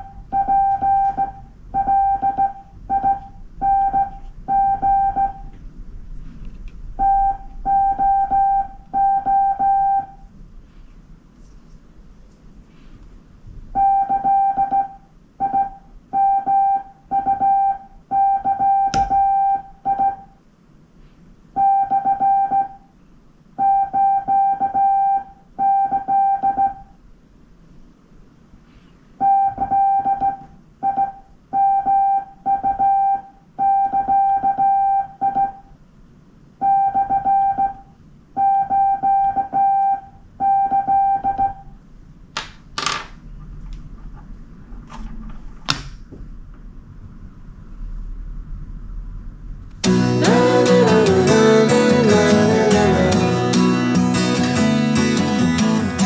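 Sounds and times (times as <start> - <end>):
morse code beeps: 0.0 - 5.5, 7.0 - 10.3, 13.8 - 20.3, 21.6 - 22.8, 23.6 - 26.9, 29.2 - 35.7, 36.6 - 41.7.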